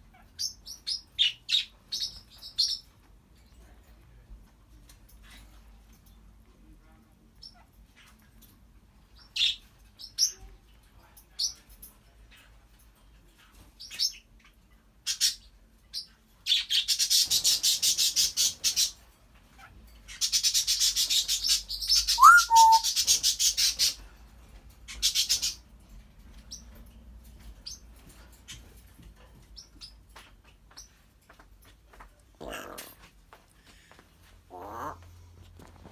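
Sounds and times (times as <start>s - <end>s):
parrot chirps: 20.4s - 23.8s
parrot whistle: 22.1s - 23.0s.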